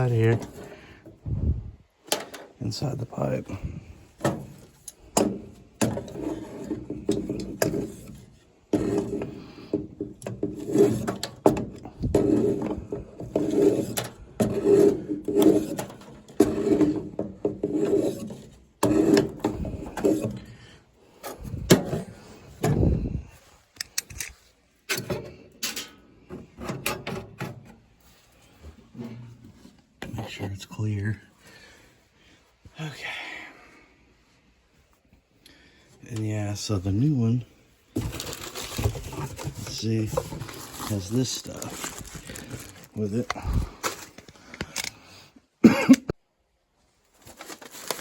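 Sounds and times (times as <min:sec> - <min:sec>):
scraping inside metal pipe: 0:06.0 - 0:21.5.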